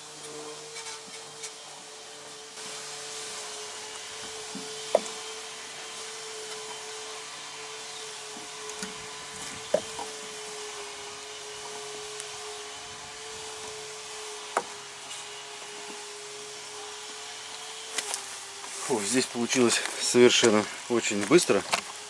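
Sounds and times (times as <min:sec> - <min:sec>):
steady hum: 0:02.6 - 0:15.4.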